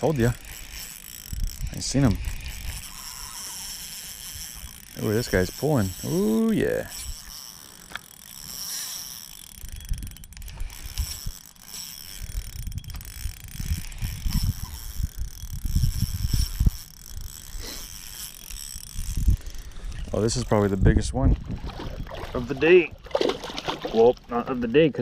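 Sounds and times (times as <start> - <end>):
fishing reel whirring: 0.0 - 25.0
wind rumble on microphone: 1.3 - 2.9, 12.2 - 17.4, 18.9 - 24.3.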